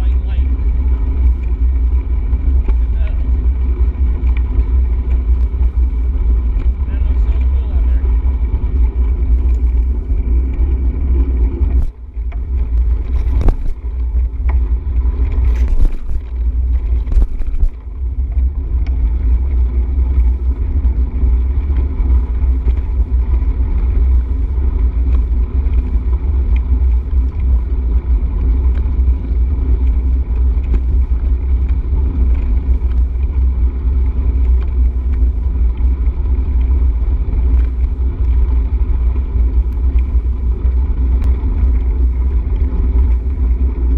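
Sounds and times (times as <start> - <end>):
bicycle wheels rolling on trail: 0.0 - 43.9
wind buffeting microphone: 0.0 - 43.9.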